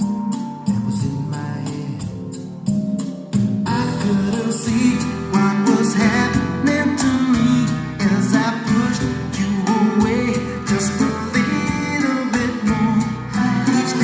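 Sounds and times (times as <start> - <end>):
song over loudspeakers: 0.0 - 14.0.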